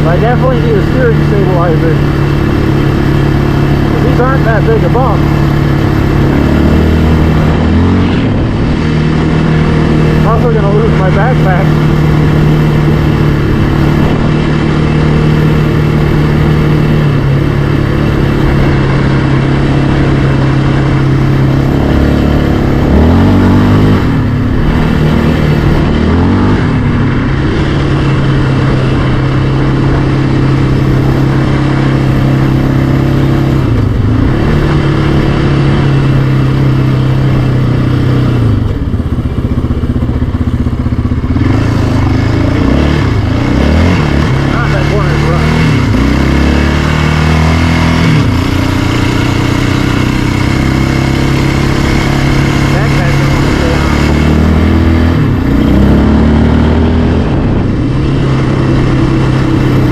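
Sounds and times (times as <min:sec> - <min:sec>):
atv engine cruising: 0:00.0 - 0:59.9.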